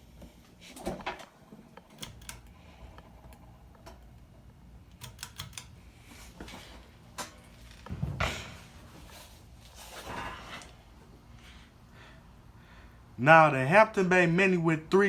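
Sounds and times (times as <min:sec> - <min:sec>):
ceiling fan humming: 0:00.0 - 0:15.0
sharp clicks: 0:04.9 - 0:05.7.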